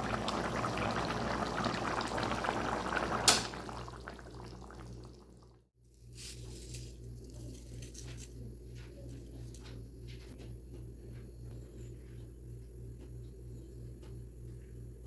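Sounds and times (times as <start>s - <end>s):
food bubbling and crackling in a pan: 0.0s - 5.7s.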